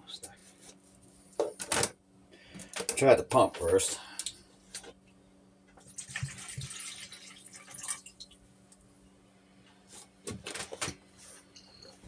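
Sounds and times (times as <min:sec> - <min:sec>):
low steady hum: 0:00.0 - 0:12.0
water splashing and trickling: 0:06.0 - 0:08.3.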